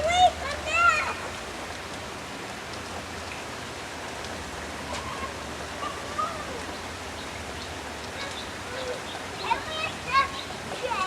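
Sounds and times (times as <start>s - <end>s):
steady rain falling: 0.0s - 11.0s
faint high voice: 8.2s - 11.0s.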